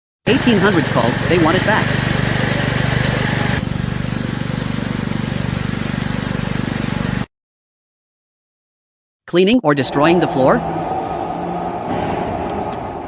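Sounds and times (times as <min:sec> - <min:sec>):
high steady whine: 0:00.3 - 0:05.4
engine chugging: 0:00.3 - 0:07.3.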